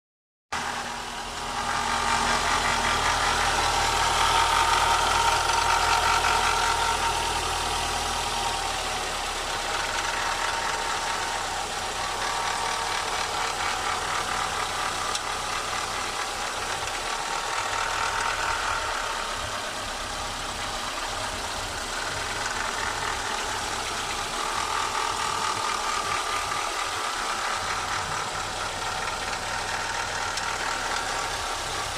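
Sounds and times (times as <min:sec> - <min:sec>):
car engine idling: 0:00.6 - 0:31.9
whine from belt pulley: 0:21.9 - 0:31.9.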